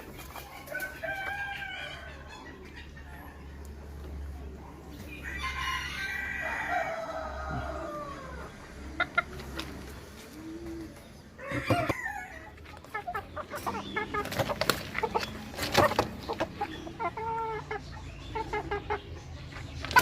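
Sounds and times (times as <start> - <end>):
chickens clucking: 0.0 - 20.0
rooster crowing: 5.2 - 8.5, 11.4 - 12.5.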